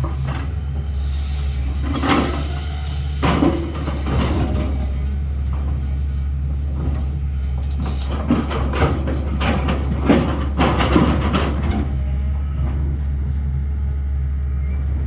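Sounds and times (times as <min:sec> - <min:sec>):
excavator diesel engine running: 0:00.0 - 0:15.0
excavator bucket knocks and scrapes: 0:01.6 - 0:13.1.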